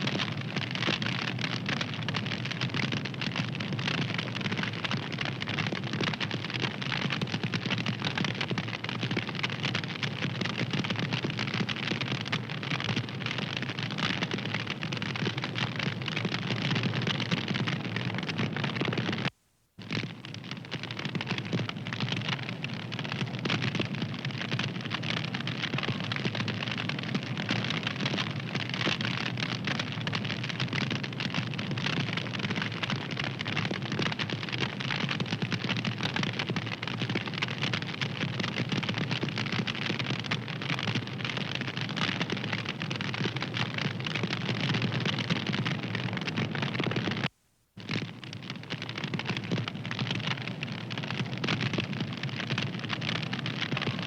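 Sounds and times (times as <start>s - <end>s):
fire crackling: 11.3s - 54.0s.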